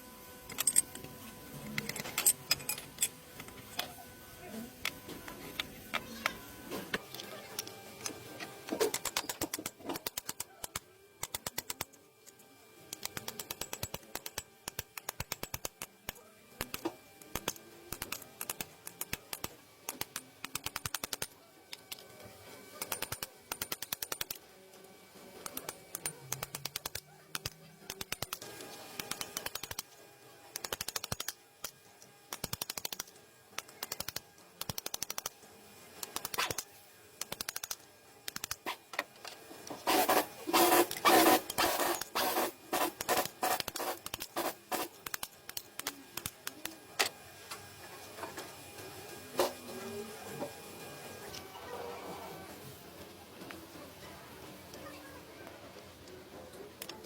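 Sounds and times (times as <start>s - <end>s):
faint music: 0.0s - 57.0s
ratchet wrench clicking: 17.4s - 21.3s, 30.6s - 31.4s, 32.3s - 35.3s, 37.2s - 38.6s.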